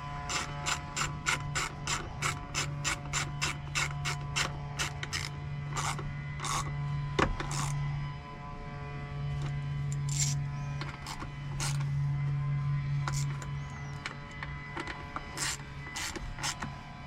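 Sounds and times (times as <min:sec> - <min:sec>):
steady low hum: 0:00.0 - 0:17.0
ratchet clicking: 0:00.3 - 0:06.7, 0:07.4 - 0:07.8, 0:09.9 - 0:11.8, 0:13.1 - 0:16.7.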